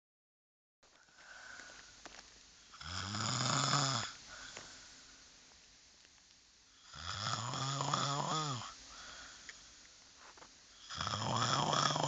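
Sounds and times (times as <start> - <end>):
person snoring loudly: 2.7 - 4.2, 6.8 - 8.8, 10.8 - 12.0.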